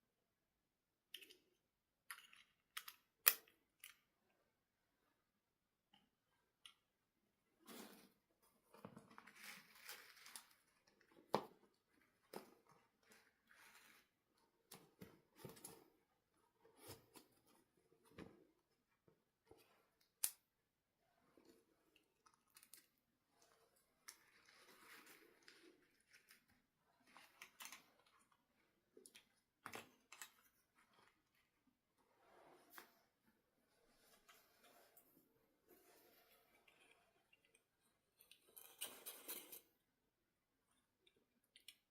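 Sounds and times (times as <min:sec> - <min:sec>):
crinkly rustles: 0:09.0 - 0:11.2.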